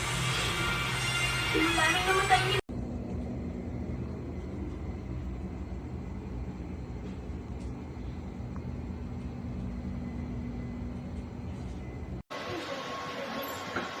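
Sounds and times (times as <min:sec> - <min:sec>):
low mechanical drone: 0:00.0 - 0:12.2
constant hum tone: 0:02.6 - 0:13.8.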